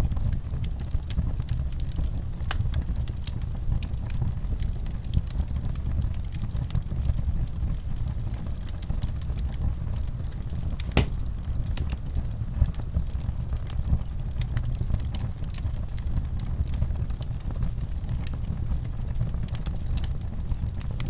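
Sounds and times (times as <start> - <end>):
fire pop: 10.8 - 11.3.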